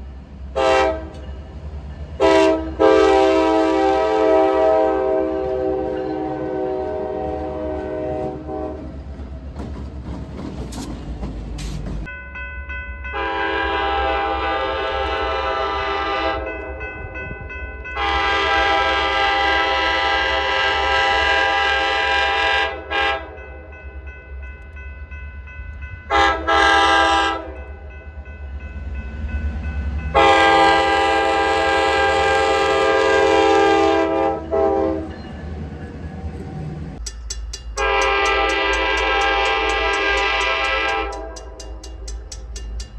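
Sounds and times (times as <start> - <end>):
locomotive air horn blasts: 0.6 - 1.2, 2.2 - 8.9, 13.2 - 16.8, 18.0 - 23.4, 26.1 - 27.6, 30.2 - 35.2, 37.8 - 41.8.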